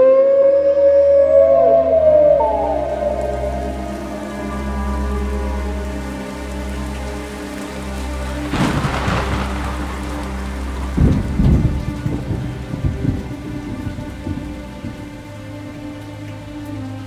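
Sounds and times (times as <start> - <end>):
steady rain: 1.4 - 17.0
thunder crack and rumbles: 7.0 - 15.9.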